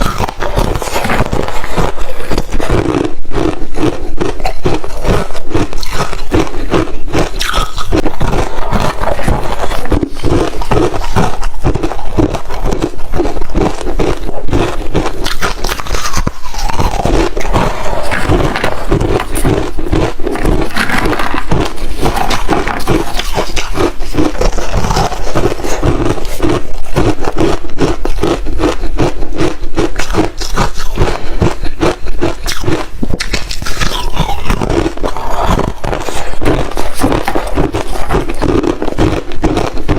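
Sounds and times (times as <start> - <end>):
ice being crunched and chewed: 0.0 - 39.9.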